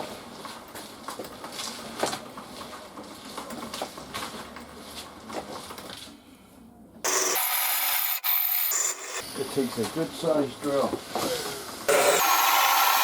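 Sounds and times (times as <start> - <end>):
loud harsh rasping: 7.1 - 9.2, 11.9 - 13.0.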